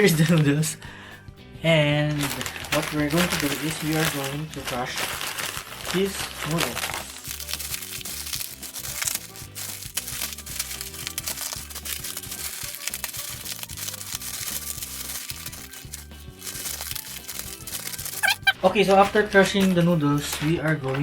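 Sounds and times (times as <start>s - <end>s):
background music: 0.0s - 21.0s
plastic bag crinkling: 2.0s - 18.6s
dry noodles crunching: 2.1s - 18.6s.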